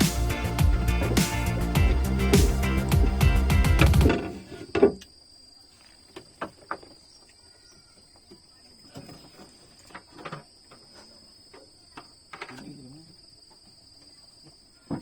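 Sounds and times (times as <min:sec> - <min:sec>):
background music: 0:00.0 - 0:04.4.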